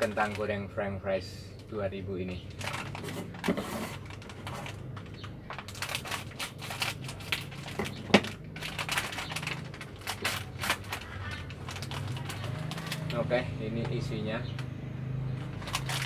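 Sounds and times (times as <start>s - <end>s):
plastic packet crinkling: 0.0s - 0.6s, 2.5s - 13.3s, 15.4s - 16.0s.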